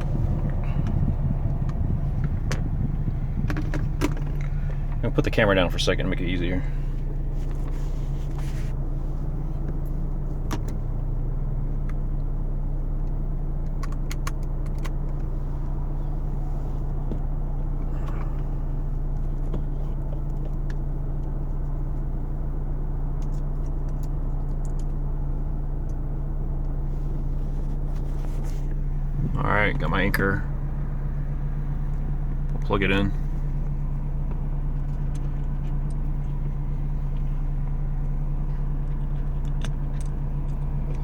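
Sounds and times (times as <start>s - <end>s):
steady low hum: 0.0s - 41.0s.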